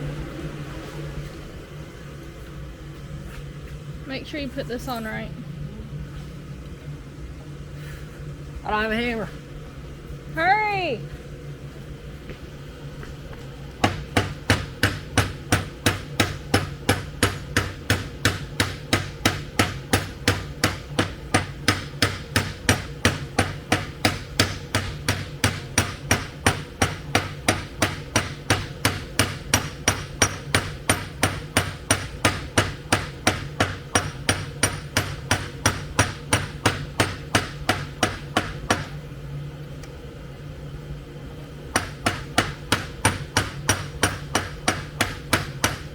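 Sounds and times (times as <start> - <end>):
hammer striking metal rod: 13.8 - 38.9, 41.8 - 45.9.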